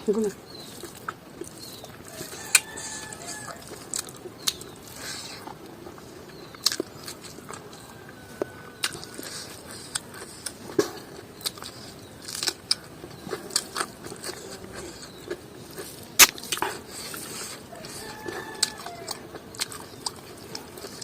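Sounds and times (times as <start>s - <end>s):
chewing mouth clicks and smacks: 6.3s - 7.8s, 8.8s - 21.0s.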